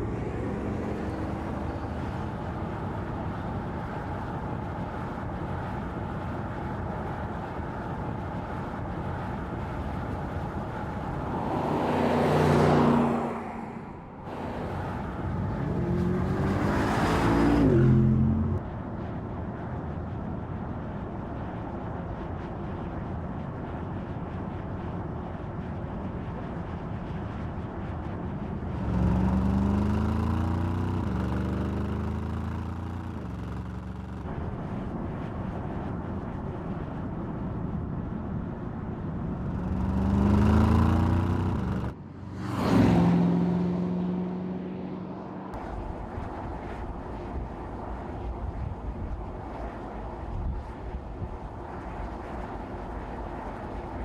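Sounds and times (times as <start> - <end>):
road noise: 0.0 - 19.2, 25.8 - 54.0
car engine accelerating: 10.9 - 18.6, 28.7 - 34.3, 39.4 - 45.6.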